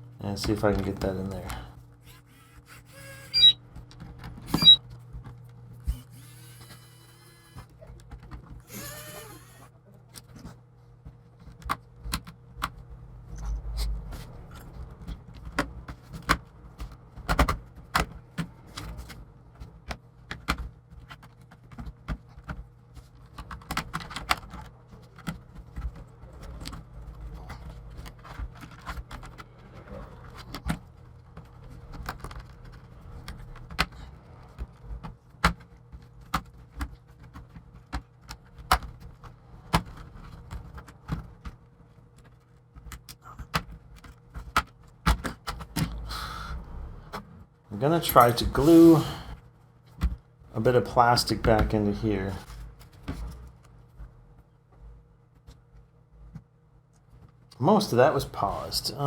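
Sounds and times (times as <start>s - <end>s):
clicks and scrapes of plastic case: 13.6s - 45.9s.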